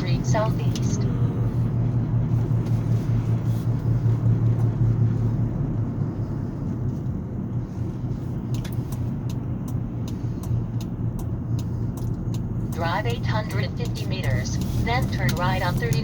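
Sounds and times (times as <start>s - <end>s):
road and tyre noise: 0.0s - 16.0s
steady low drone: 0.0s - 16.0s
light regular ticks: 8.5s - 12.9s.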